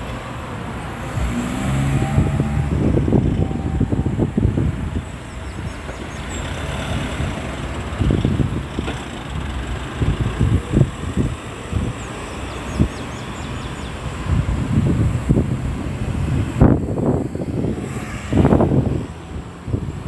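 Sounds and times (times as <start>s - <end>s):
low rumbling surges: 0.0s - 20.0s
road traffic rushing: 0.0s - 20.0s.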